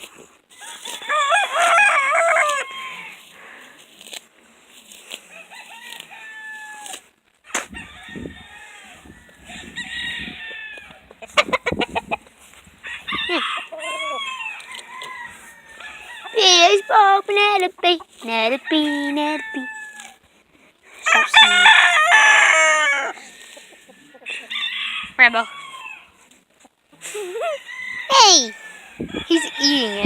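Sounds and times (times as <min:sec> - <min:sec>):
rooster crowing: 0:00.6 - 0:03.3, 0:05.3 - 0:06.9, 0:07.7 - 0:11.0, 0:12.8 - 0:17.0, 0:21.1 - 0:26.2, 0:27.5 - 0:30.0
chickens clucking: 0:09.0 - 0:19.8, 0:22.3 - 0:30.0.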